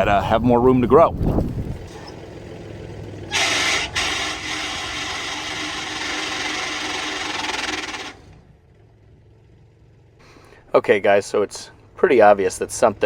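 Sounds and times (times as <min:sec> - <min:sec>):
wood chipper grinding: 0:01.3 - 0:08.5.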